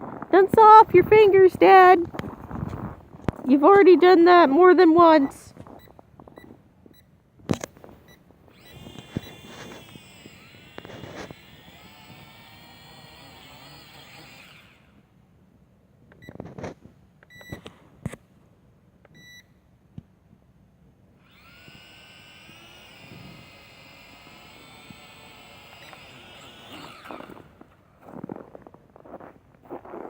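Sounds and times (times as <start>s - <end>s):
drone motors whirring: 2.0s - 5.4s, 7.8s - 15.0s, 21.2s - 28.3s.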